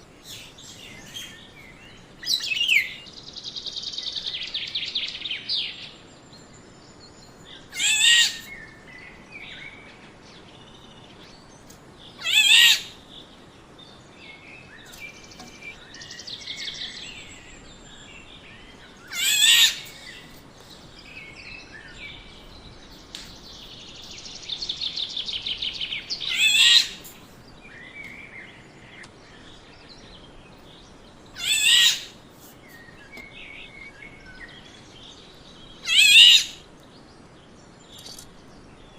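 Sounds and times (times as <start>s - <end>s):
harsh nasal bird calls: 7.6s - 8.6s, 12.1s - 13.2s, 18.7s - 27.3s, 31.3s - 33.9s, 35.8s - 36.7s.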